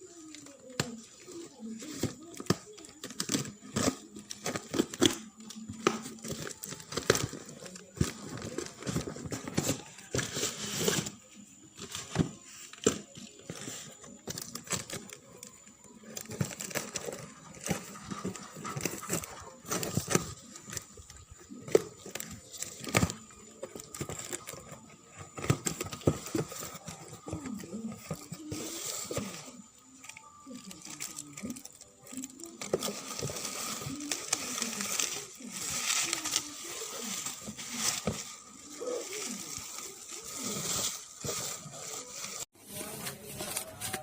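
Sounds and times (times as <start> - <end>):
plastic wrap crinkling: 13.5 - 44.0.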